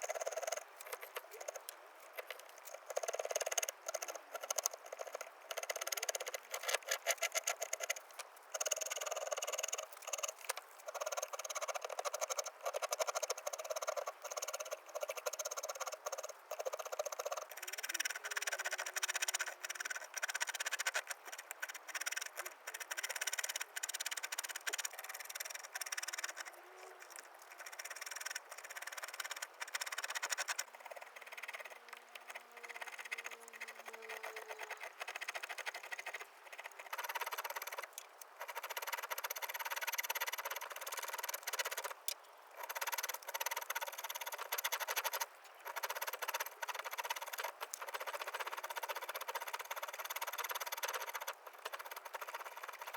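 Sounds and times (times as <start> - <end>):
carving tools scraping wood: 2.2 - 8.0.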